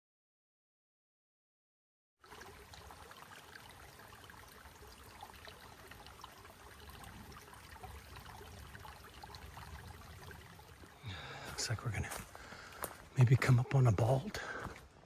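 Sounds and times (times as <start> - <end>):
small stream trickling: 2.2 - 15.0.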